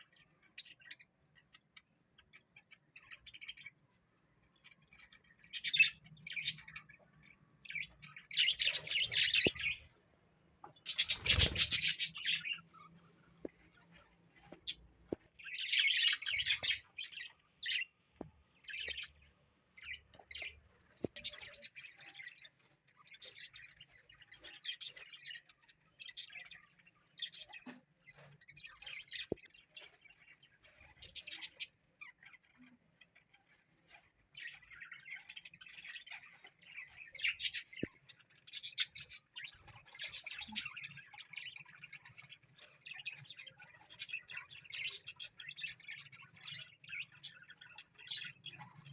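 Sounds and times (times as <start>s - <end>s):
parrot chirping and calling: 10.8s - 12.6s.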